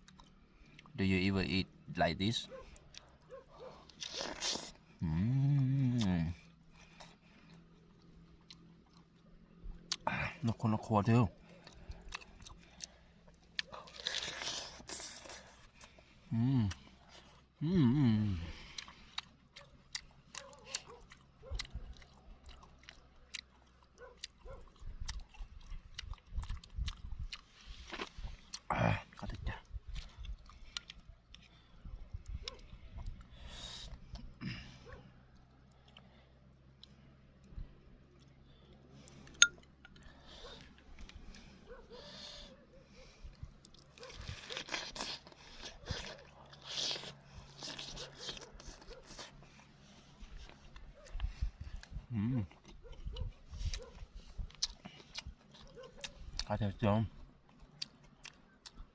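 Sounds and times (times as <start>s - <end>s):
person chewing and crunching food: 0.0s - 58.9s
crunching and rustling: 43.5s - 52.0s.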